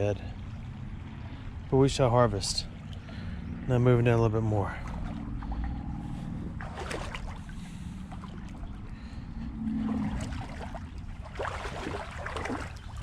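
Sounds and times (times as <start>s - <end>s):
boots wading through creek: 0.0s - 13.0s
water sloshing and trickling: 0.0s - 13.0s
brief low hum: 4.8s - 11.4s.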